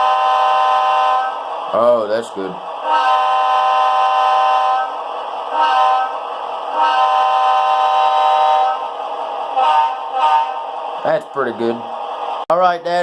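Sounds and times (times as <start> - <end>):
locomotive air horn blasts: 0.0 - 1.4, 2.8 - 4.9, 5.5 - 8.8, 9.6 - 10.7.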